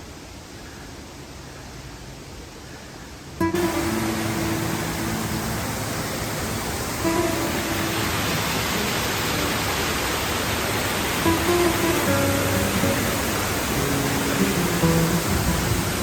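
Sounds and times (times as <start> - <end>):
acoustic guitar music: 3.4 - 16.0
waterfall roaring: 3.4 - 16.0.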